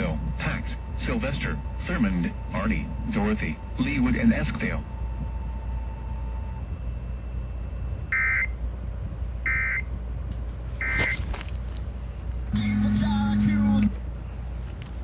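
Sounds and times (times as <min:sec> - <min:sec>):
steady low hum: 0:00.0 - 0:15.0
low buzz: 0:12.4 - 0:14.1.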